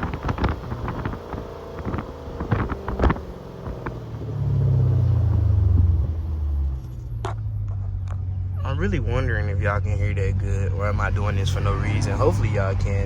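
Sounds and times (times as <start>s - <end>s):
exhaust pops: 0.0s - 8.3s
car engine deep drone: 0.0s - 13.0s.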